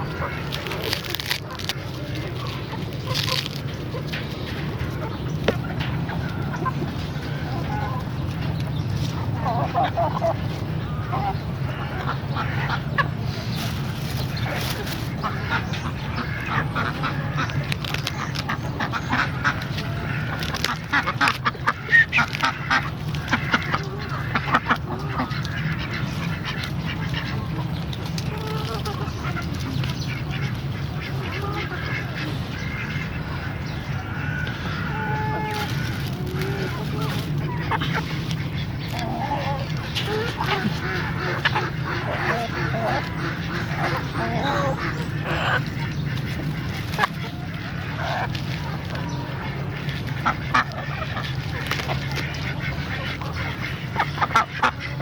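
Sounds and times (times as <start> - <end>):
low background hum: 0.0 - 55.0
domestic fowl calling: 18.2 - 55.0.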